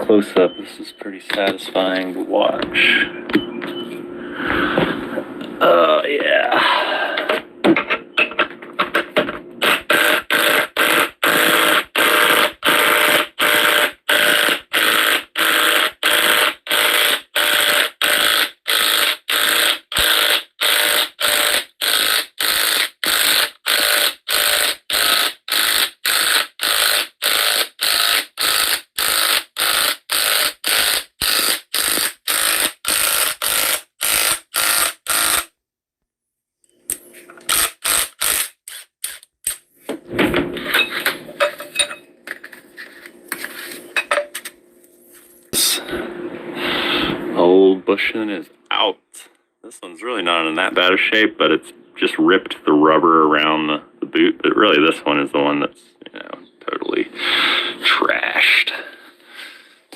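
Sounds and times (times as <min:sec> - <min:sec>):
impact wrench hammering: 0:07.6 - 0:35.5.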